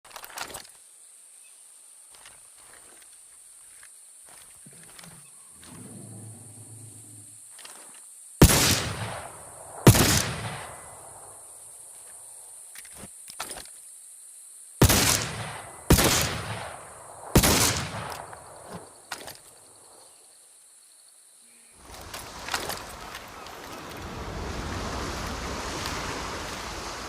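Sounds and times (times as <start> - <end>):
pistol shots: 8.4 - 11.0, 14.8 - 18.6.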